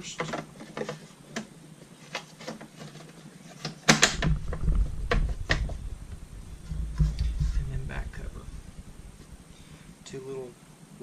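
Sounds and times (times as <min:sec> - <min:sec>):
loud plastic snap: 0:03.6 - 0:04.4
handling knocks: 0:03.9 - 0:09.4.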